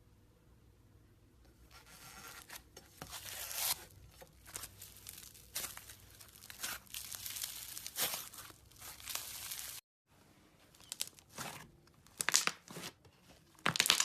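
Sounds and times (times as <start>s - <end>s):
slime crackling and tearing: 3.1s - 9.8s.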